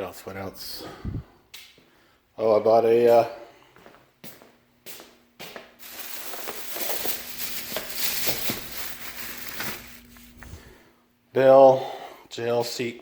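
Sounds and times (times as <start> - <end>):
packaging clicks: 5.8 - 10.2
packaging crinkling and rustling: 5.8 - 10.6.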